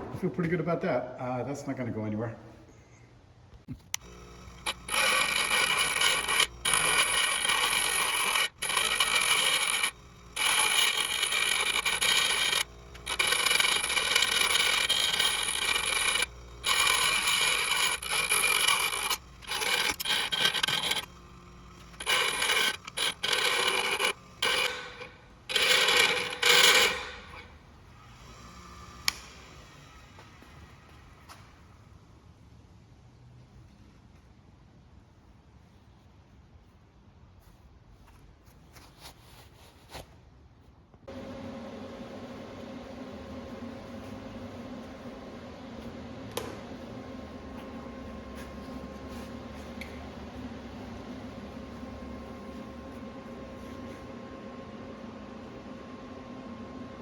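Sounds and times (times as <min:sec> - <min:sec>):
electric arc welding: 0:04.0 - 0:27.5.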